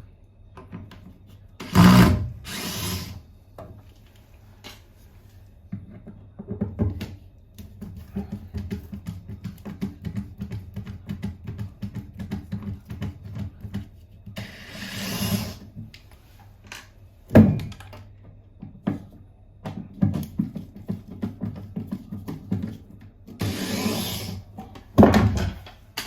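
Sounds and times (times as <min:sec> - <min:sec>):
knocks and clicks of hand work: 0:05.7 - 0:14.4.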